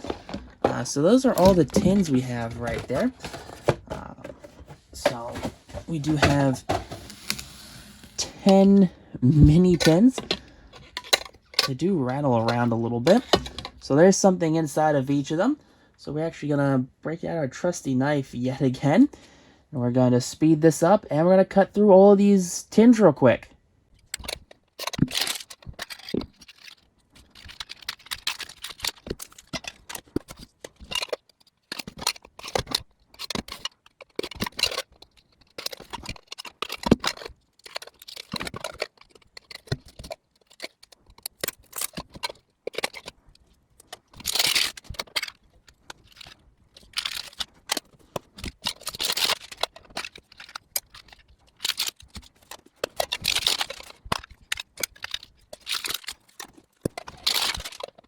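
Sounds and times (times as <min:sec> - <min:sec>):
metal tins clicking and knocking: 0:00.0 - 0:07.4, 0:09.7 - 0:11.7, 0:24.1 - 0:43.1
plastic wrap tearing and crinkling: 0:06.9 - 0:08.5, 0:24.2 - 0:58.0.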